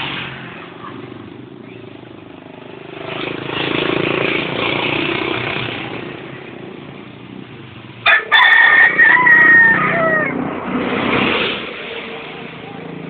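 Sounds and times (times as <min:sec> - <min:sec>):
vehicle passing: 0:00.0 - 0:13.0
rooster crowing: 0:08.0 - 0:10.4.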